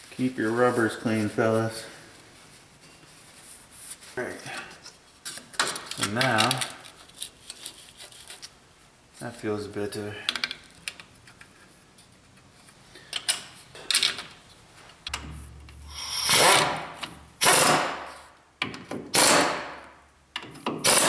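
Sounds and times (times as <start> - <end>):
air ratchet running: 15.1 - 18.2, 19.1 - 19.6.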